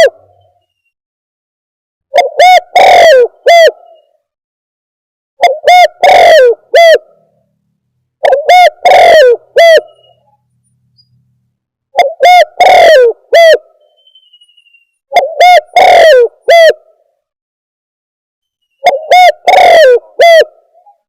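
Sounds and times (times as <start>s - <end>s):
dove cooing: 2.1s - 4.1s, 5.4s - 7.2s, 8.2s - 10.3s, 12.0s - 13.7s, 15.1s - 16.9s, 18.8s - 21.0s.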